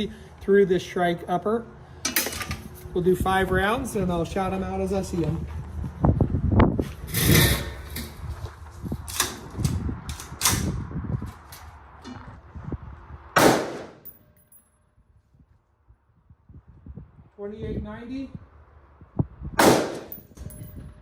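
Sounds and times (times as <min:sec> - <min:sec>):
rifle shots with ringing: 0:13.4 - 0:14.2, 0:19.6 - 0:20.7.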